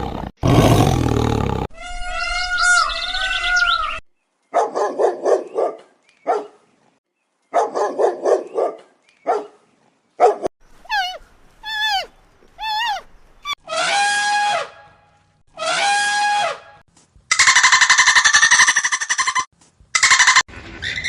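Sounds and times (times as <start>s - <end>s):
dog barking: 4.5s - 6.6s, 7.5s - 9.6s, 10.2s - 10.5s
dog high wavering call: 10.9s - 13.0s.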